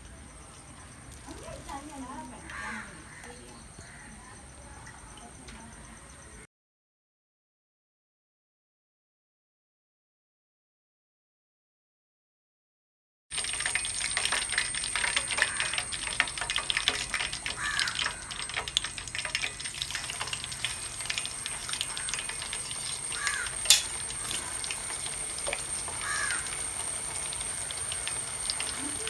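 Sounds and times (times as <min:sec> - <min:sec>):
chicken frying in oil: 0:00.3 - 0:04.1, 0:13.3 - 0:29.0
crows cawing: 0:02.3 - 0:04.3, 0:15.3 - 0:16.0, 0:17.3 - 0:18.8, 0:20.7 - 0:29.0.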